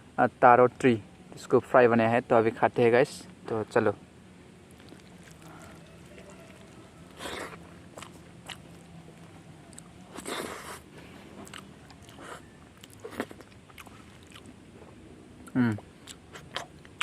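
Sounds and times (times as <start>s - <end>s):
person chewing food: 4.7s - 17.0s.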